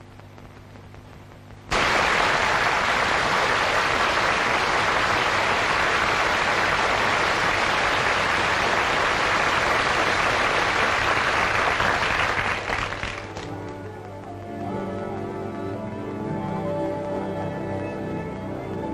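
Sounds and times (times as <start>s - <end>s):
audience applauding: 1.7s - 14.3s.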